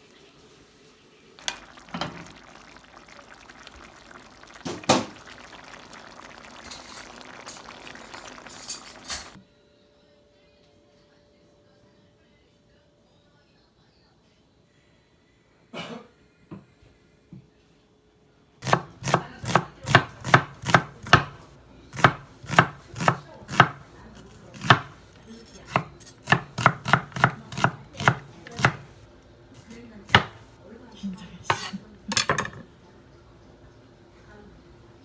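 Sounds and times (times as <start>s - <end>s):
knife chopping on cutting board: 18.6s - 29.0s, 29.6s - 30.5s, 31.5s - 31.7s.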